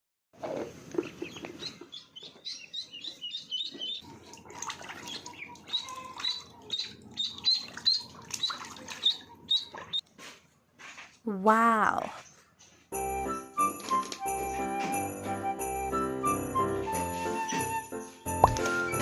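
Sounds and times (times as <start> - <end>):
ducklings peeping: 0.9 - 10.0.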